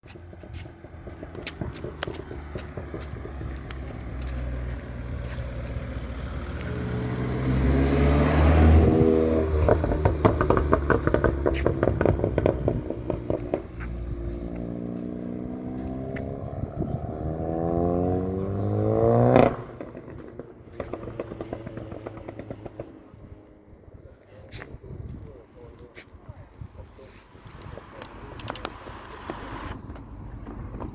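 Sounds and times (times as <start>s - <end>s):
exhaust pops and crackles: 0.0s - 7.7s, 8.8s - 17.6s, 19.3s - 23.4s, 24.0s - 30.9s
car engine revving: 0.3s - 23.8s.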